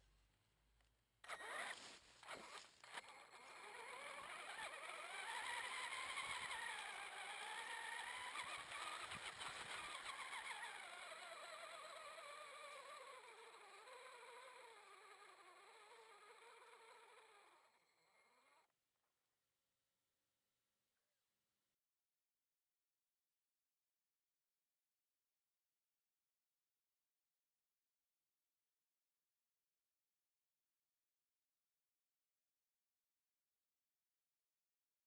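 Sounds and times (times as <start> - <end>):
electric motor whining: 1.3 - 18.5.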